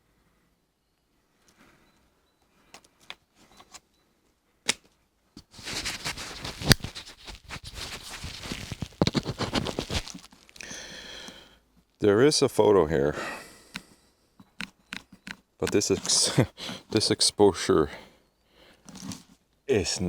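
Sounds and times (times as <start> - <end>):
rustling and crackling handling noise: 4.8 - 10.7, 14.4 - 17.1, 18.8 - 19.4
sharp clicks: 13.7 - 16.0.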